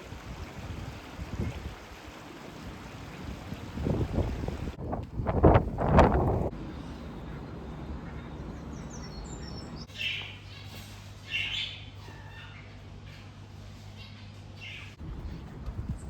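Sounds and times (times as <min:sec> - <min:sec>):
birds chirping: 0:05.8 - 0:16.0.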